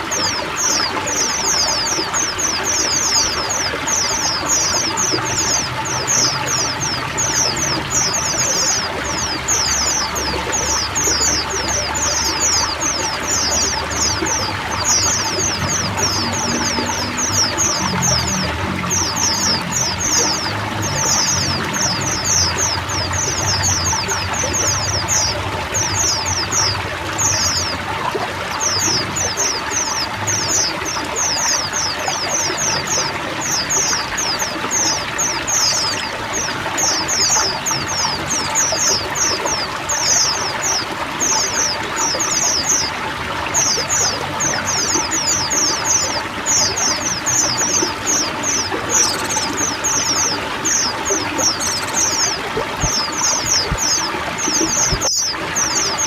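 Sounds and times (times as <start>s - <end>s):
birds chirping: 0.0s - 56.0s
running water: 0.0s - 56.0s.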